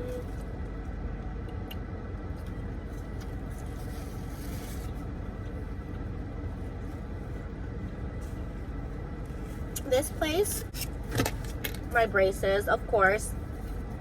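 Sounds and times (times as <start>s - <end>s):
car air conditioning hum: 0.0s - 14.0s
soft rustle: 2.8s - 5.7s, 6.4s - 10.0s, 13.3s - 14.0s.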